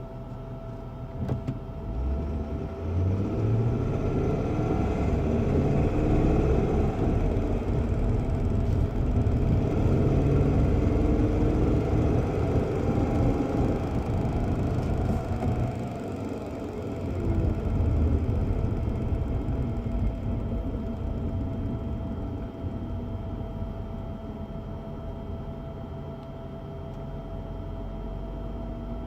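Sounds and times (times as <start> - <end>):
high-speed clicking from dashboard: 1.2 - 24.2, 26.2 - 27.1
car engine accelerating: 1.8 - 24.1
road noise: 1.9 - 23.0.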